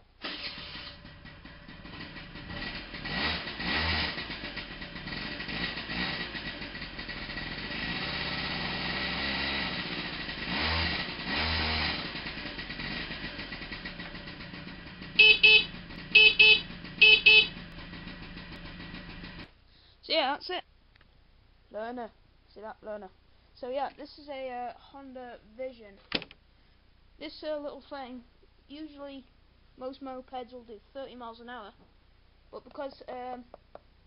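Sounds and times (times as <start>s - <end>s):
moped engine idling and revving: 0.2s - 19.5s
moped horn beeps: 15.0s - 18.1s.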